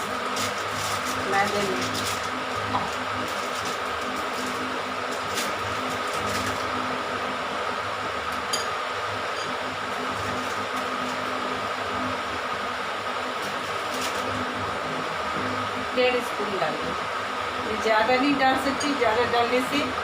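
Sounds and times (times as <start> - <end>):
electric fan whirring: 0.0 - 20.0.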